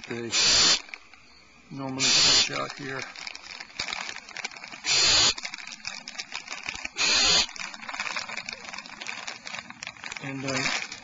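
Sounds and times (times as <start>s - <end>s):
owl nestlings hissing: 0.0s - 6.0s, 6.6s - 8.4s
rustling in nest: 0.0s - 11.0s.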